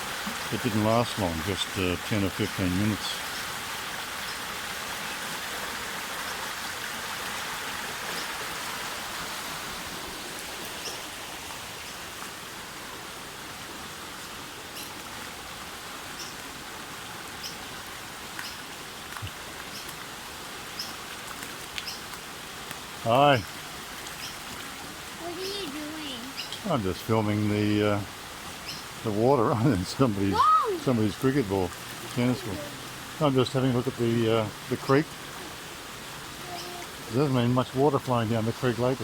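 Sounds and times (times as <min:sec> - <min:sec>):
creek water rushing: 0:00.0 - 0:39.0
faint high ticks: 0:21.3 - 0:22.8.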